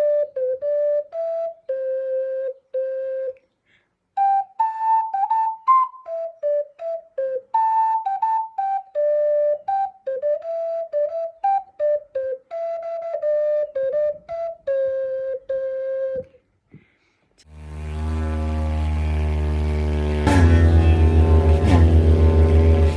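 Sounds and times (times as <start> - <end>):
flute-like tune: 0.0 - 3.4, 4.2 - 16.4
deep steady drone: 17.5 - 22.9.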